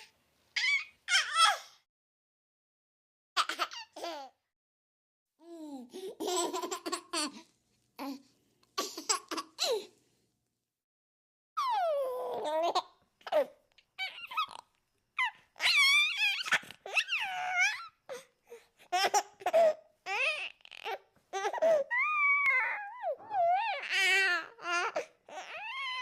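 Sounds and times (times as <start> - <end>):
baby giggling and squealing: 11.6 - 14.6, 15.2 - 18.0.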